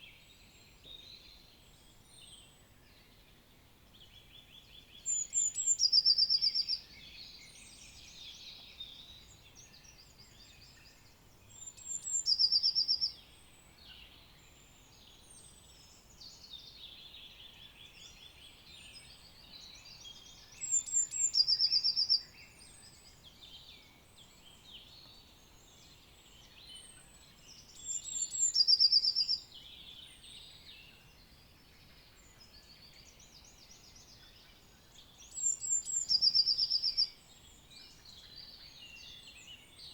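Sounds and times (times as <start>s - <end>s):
many birds singing and chirping: 0.0s - 39.9s
bird song with quick trill: 4.0s - 14.1s, 14.9s - 39.9s.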